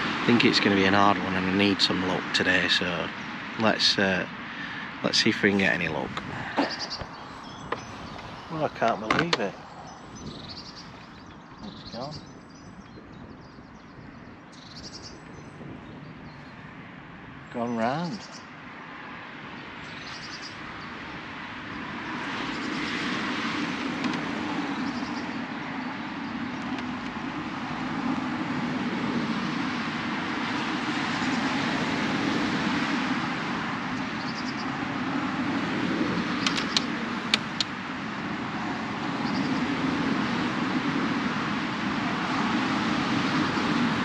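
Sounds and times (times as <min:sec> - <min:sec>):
wind gusting across water: 0:00.0 - 0:44.0
faint high bird chirps: 0:06.6 - 0:16.5
sharp clicks: 0:36.4 - 0:37.8.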